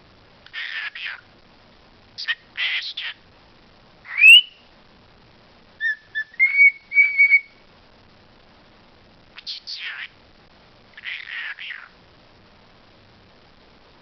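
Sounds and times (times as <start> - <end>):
bird rising whistle: 4.1 - 4.6, 5.8 - 7.6
bird short whistled notes: 4.1 - 4.6.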